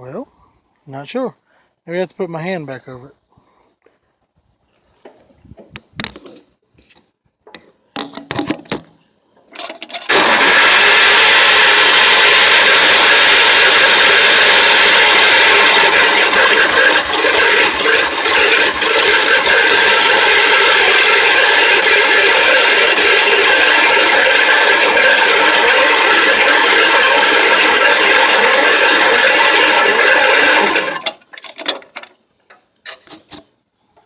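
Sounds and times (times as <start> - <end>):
engine cranking without catching: 9.4 - 32.2.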